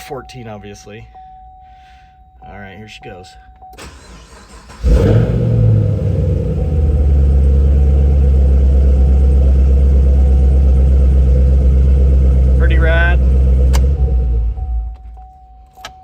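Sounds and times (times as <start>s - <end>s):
car engine starting and idling: 3.8s - 15.2s.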